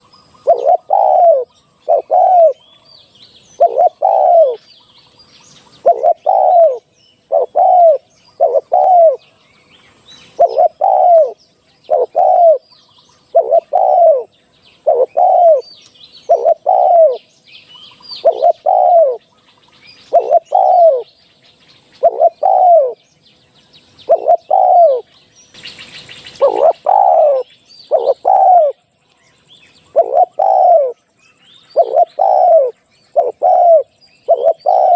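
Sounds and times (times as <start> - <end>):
dove cooing: 0.0 - 2.8, 3.5 - 4.6, 5.7 - 9.2, 10.3 - 17.3, 18.1 - 19.3, 20.0 - 21.1, 22.0 - 23.0, 24.1 - 25.1, 26.3 - 28.9, 29.8 - 31.0, 31.7 - 34.9
faint small bird chirps: 0.0 - 34.9.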